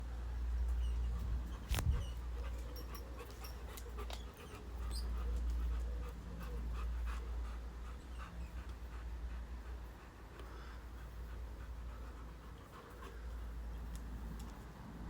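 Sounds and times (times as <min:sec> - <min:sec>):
wind buffeting microphone: 0:01.1 - 0:02.3.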